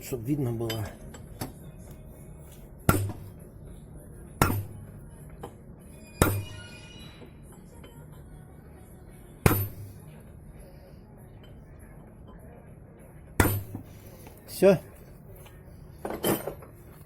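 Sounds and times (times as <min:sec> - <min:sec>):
hammer striking steel: 0:02.9 - 0:03.3, 0:04.4 - 0:04.8, 0:06.1 - 0:06.8, 0:09.4 - 0:09.9, 0:13.4 - 0:13.9.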